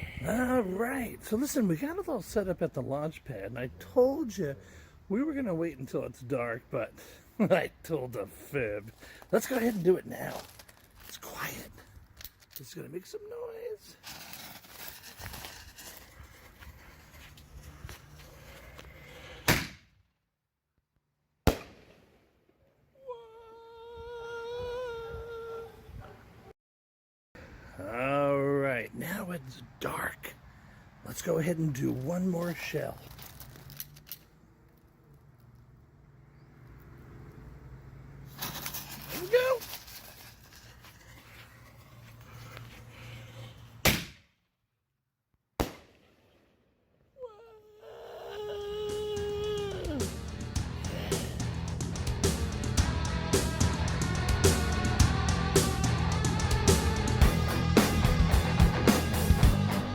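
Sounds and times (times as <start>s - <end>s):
mortar launch thump: 19.4s - 19.9s, 43.8s - 44.2s
firework shell bang: 19.5s - 19.9s, 43.8s - 44.2s.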